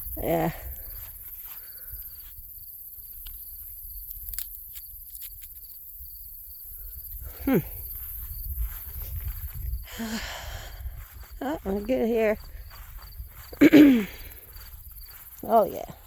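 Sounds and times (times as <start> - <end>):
insects trilling: 0.0 - 16.0
faint ticks: 3.2 - 5.7.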